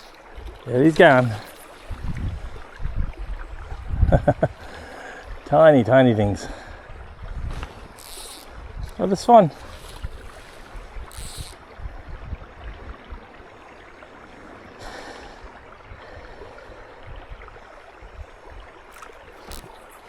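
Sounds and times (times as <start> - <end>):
wind buffeting microphone: 0.0 - 5.6, 6.2 - 13.8.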